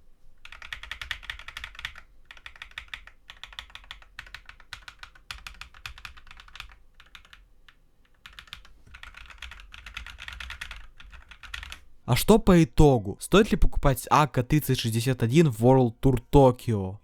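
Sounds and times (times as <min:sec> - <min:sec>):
mechanical keyboard typing: 0:00.4 - 0:11.8.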